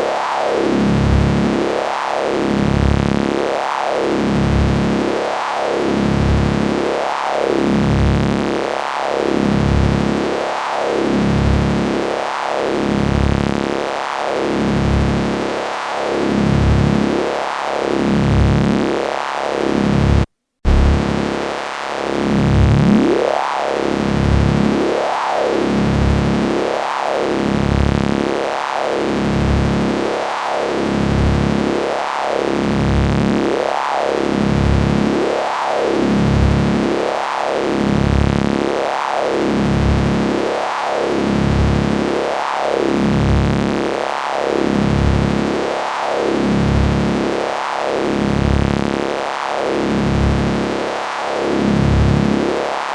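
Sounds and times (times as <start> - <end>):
tone sweeping up and down: 20.7 - 21.2
electric hum and hiss: 20.7 - 21.5.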